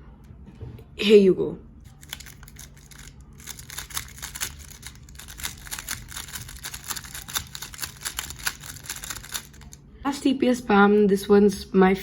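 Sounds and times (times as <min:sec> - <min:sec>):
puzzle cube plastic clicking: 0:01.9 - 0:09.8.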